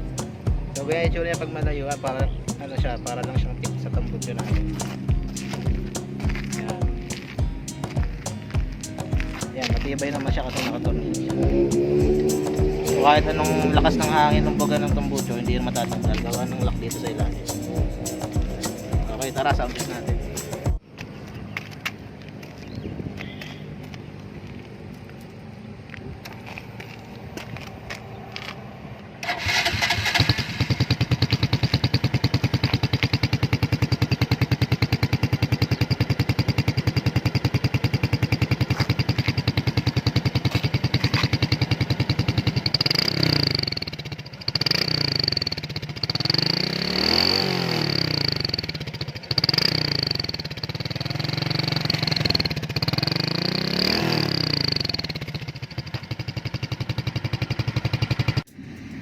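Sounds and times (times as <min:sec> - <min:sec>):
engine revving: 0:00.0 - 0:20.8, 0:29.2 - 0:55.5
motorcycle engine idling: 0:00.0 - 0:25.8, 0:29.2 - 0:59.0.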